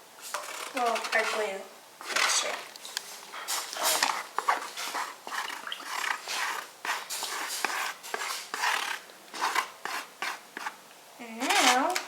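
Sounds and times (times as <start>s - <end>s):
wet sloshing in a bowl: 2.1s - 10.1s.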